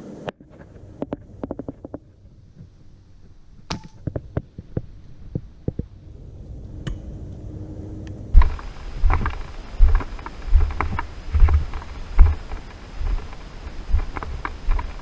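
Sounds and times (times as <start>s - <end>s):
airsoft gunfire snaps: 3.7s - 4.2s.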